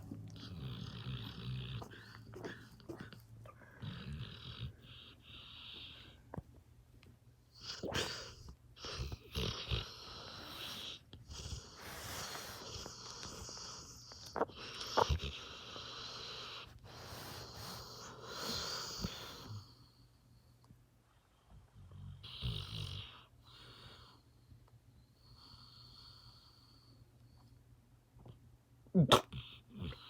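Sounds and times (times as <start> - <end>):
dog snoring: 0.0 - 6.2, 7.6 - 19.9, 21.7 - 24.2, 29.1 - 30.0.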